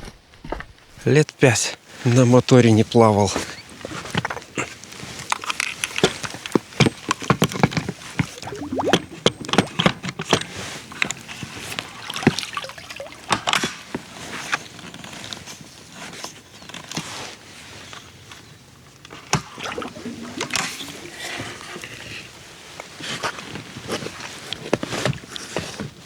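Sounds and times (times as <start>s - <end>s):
water sloshing and splashing: 8.3s - 10.0s, 11.8s - 13.7s, 19.5s - 21.6s.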